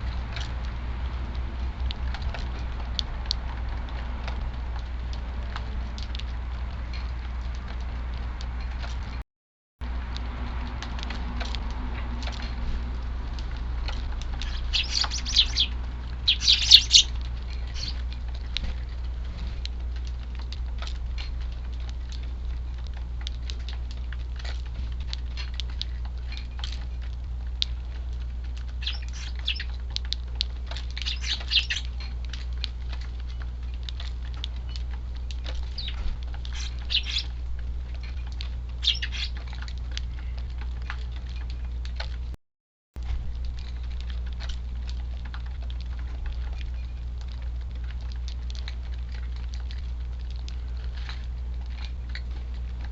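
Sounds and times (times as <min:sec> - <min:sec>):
steady low rumble: 0:00.0 - 0:09.2, 0:09.8 - 0:42.4, 0:43.0 - 0:52.9
sparrows chirping: 0:14.3 - 0:18.1, 0:28.8 - 0:29.8, 0:30.9 - 0:32.0, 0:35.5 - 0:37.4, 0:38.8 - 0:39.4.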